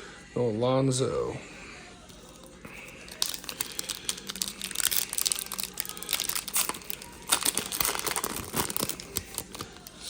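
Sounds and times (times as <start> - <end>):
plastic wrapper crinkling and tearing: 2.1 - 10.0.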